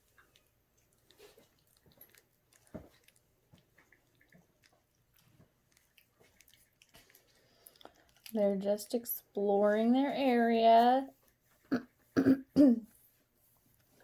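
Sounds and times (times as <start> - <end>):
puppies scuffling and clicking: 0.0 - 10.2.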